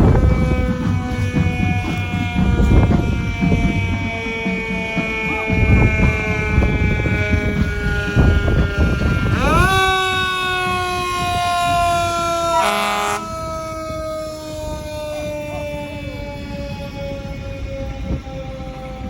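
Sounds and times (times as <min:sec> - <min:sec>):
fire truck siren: 0:00.0 - 0:19.0
lower siren tone: 0:00.0 - 0:19.0
air horn blast: 0:05.2 - 0:13.6.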